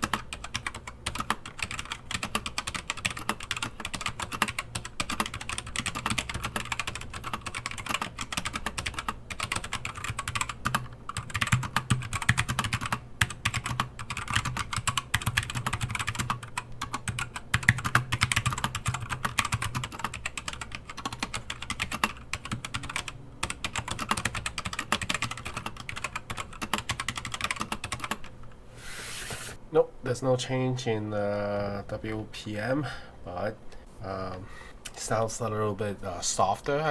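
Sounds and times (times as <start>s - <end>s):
fast mechanical keyboard typing: 0.0s - 28.3s.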